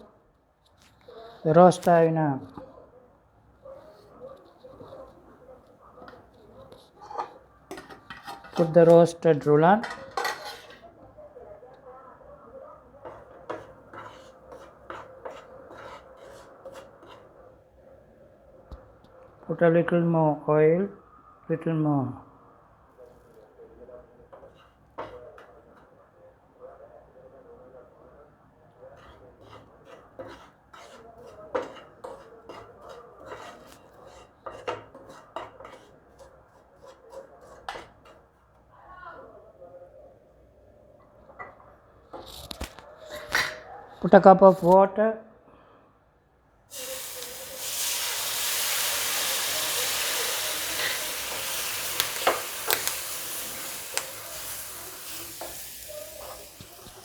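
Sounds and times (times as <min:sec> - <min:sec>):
spoon scraping and tapping pan: 0:06.9 - 0:09.0, 0:09.8 - 0:10.8, 0:13.0 - 0:17.4, 0:24.3 - 0:25.6, 0:29.0 - 0:38.2, 0:49.1 - 0:57.0.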